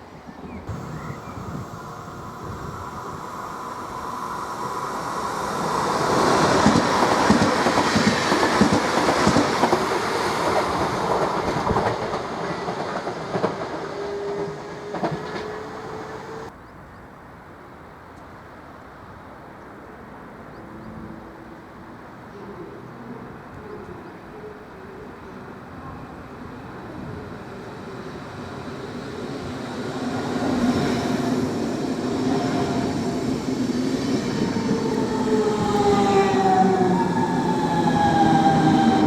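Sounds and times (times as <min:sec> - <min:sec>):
electric train passing: 0:00.0 - 0:16.6, 0:25.4 - 0:39.0.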